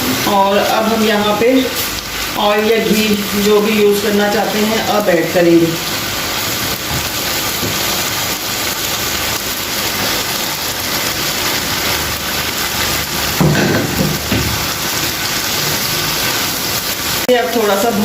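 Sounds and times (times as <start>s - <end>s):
chicken sizzling in a pan: 0.0s - 18.0s.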